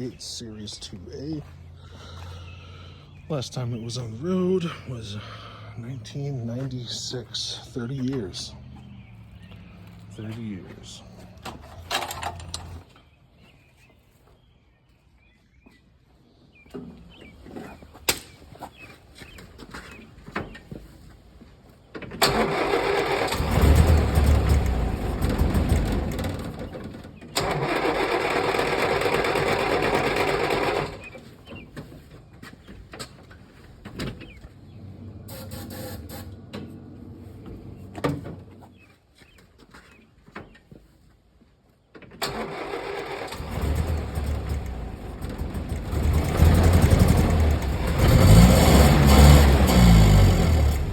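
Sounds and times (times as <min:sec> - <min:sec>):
four-cylinder engine running: 0:00.0 - 0:12.9, 0:22.2 - 0:32.1, 0:42.2 - 0:50.9
scattered clicks and knocks: 0:11.4 - 0:12.9.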